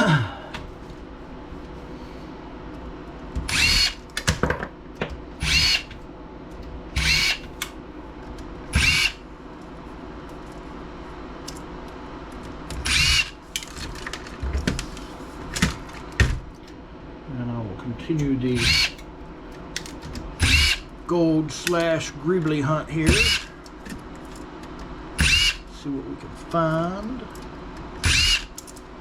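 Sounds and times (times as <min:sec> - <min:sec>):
power driver motor whining: 0:03.4 - 0:04.2, 0:05.4 - 0:06.0, 0:06.9 - 0:07.7, 0:08.7 - 0:09.2, 0:12.8 - 0:13.4, 0:18.2 - 0:19.1, 0:19.8 - 0:21.0, 0:22.9 - 0:23.6, 0:25.2 - 0:25.7, 0:28.0 - 0:28.6.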